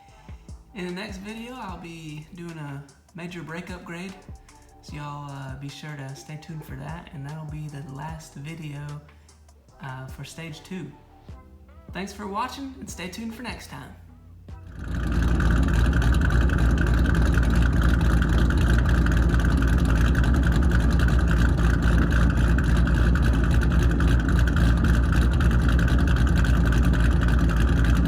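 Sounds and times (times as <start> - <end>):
car engine exhaust note: 14.0 - 28.0.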